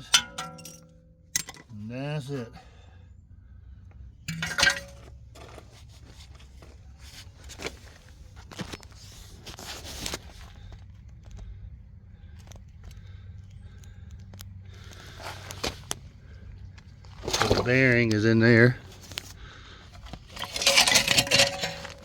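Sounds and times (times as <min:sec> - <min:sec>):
metal clank ringing: 0:00.0 - 0:01.7, 0:04.3 - 0:05.1, 0:20.4 - 0:22.0
tools clicking and scraping: 0:00.0 - 0:01.8, 0:04.3 - 0:06.8, 0:19.0 - 0:22.0
low steady hum: 0:00.0 - 0:22.0.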